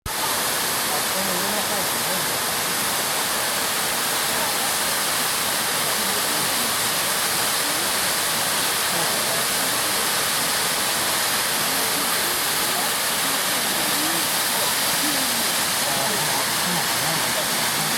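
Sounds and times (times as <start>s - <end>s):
waterfall splashing onto rock: 0.1s - 17.9s.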